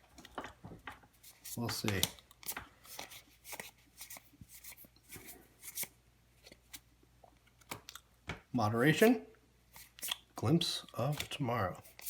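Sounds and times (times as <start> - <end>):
cards flicking and rubbing: 1.2 - 6.8, 9.7 - 10.3, 11.1 - 12.0.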